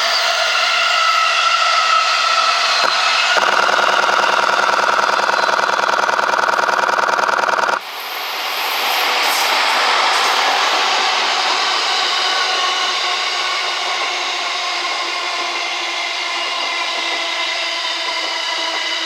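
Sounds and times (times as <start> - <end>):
loud pulsing buzz: 2.8 - 7.8.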